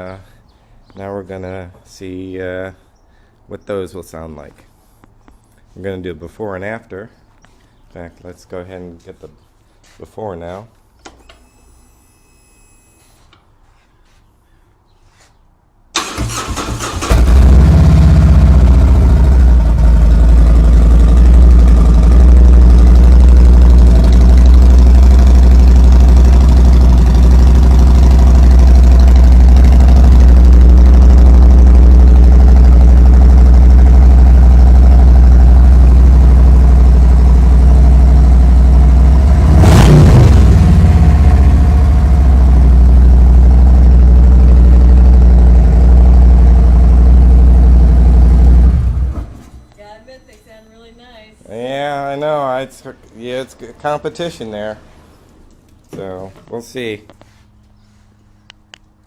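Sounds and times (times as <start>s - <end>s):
motorcycle engine idling loudly: 18.2s - 39.2s.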